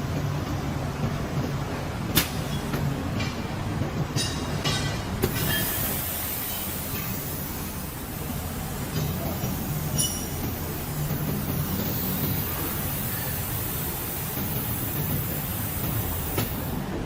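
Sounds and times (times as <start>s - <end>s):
hiss: 5.2s - 17.0s.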